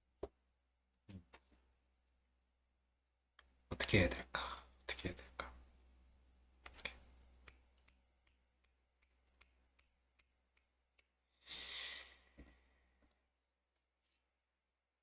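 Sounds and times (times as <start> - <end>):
short loud hiss: 11.4 - 12.2
faint small clicks: 12.4 - 13.3.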